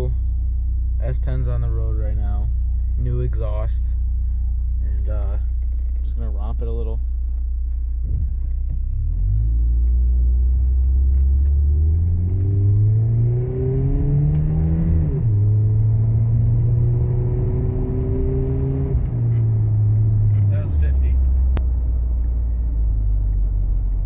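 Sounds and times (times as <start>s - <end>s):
pickup engine accelerating hard: 8.3s - 24.0s.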